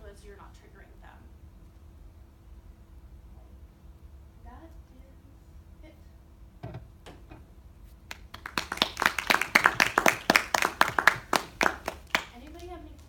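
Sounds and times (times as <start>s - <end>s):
small audience clapping: 8.1s - 13.0s.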